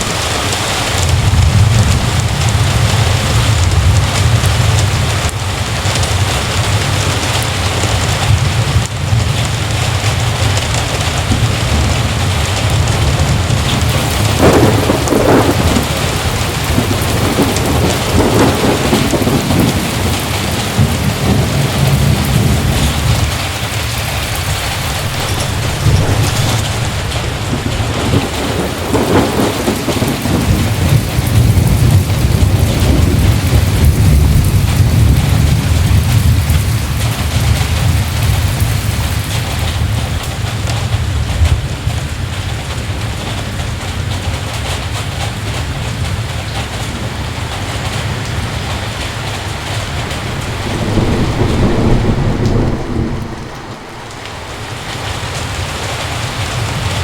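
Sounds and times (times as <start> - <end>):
heavy rain falling: 0.0 - 57.0
low rumble: 22.4 - 29.2, 48.6 - 56.0.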